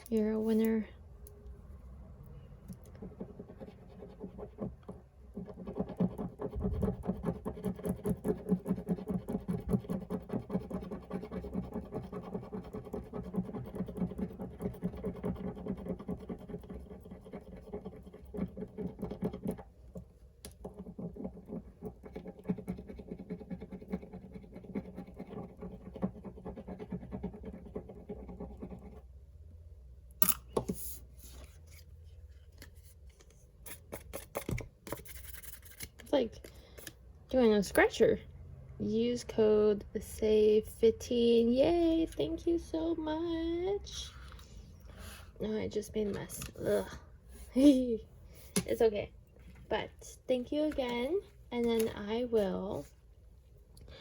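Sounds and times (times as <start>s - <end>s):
coin scratching a card: 5.4s - 19.7s, 20.6s - 29.0s, 33.7s - 35.9s.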